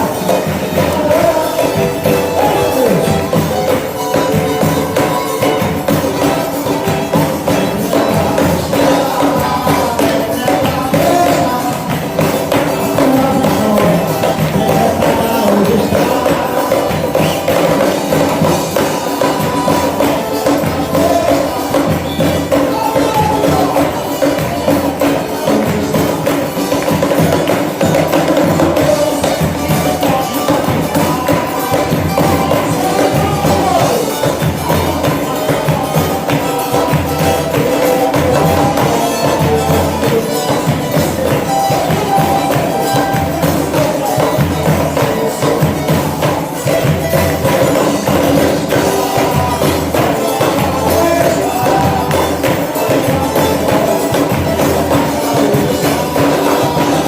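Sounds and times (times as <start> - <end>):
gospel worship music: 0.0 - 57.0
percussion strokes: 0.0 - 57.0.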